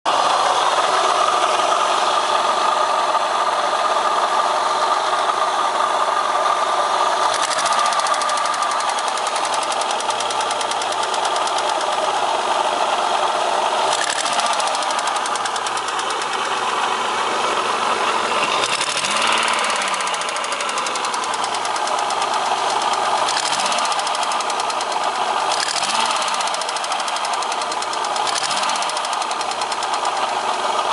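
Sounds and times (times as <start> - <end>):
car engine running with a knock: 7.2 - 30.9.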